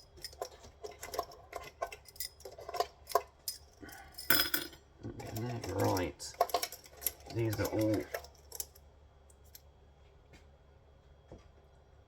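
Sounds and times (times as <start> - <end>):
metal clatter: 0.0 - 8.8
metal parts and tools clinking: 0.0 - 8.8.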